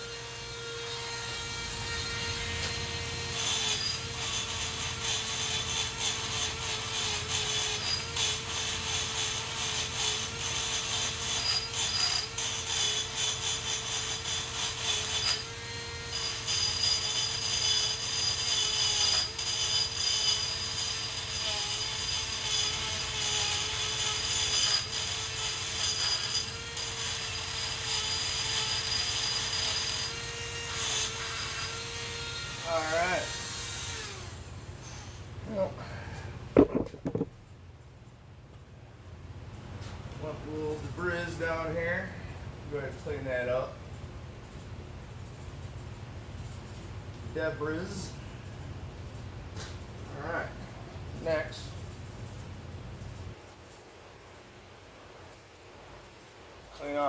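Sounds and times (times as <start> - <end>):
rasping scrape on metal: 0.0 - 33.4.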